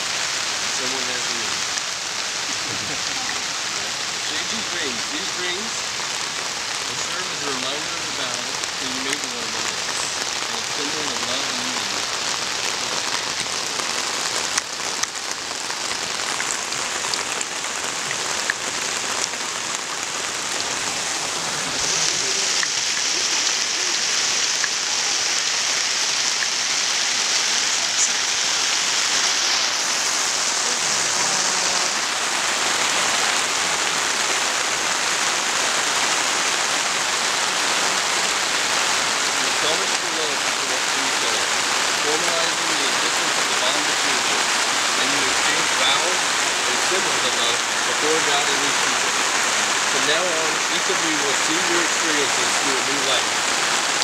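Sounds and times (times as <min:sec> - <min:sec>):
heavy rain on a tent roof: 0:00.0 - 0:54.0.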